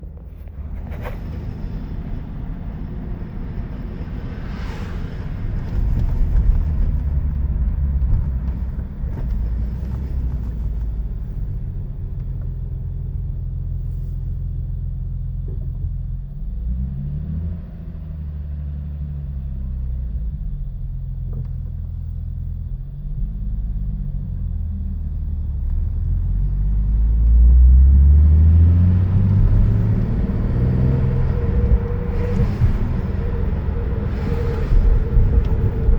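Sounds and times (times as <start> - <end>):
drivetrain rattle or whine: 0.0 - 16.8, 28.7 - 35.9
car engine revving: 25.6 - 35.9.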